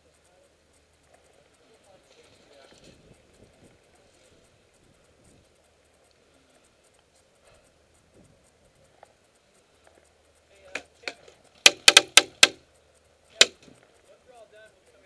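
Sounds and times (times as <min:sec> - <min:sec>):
airsoft gun shots: 0:11.6 - 0:12.6.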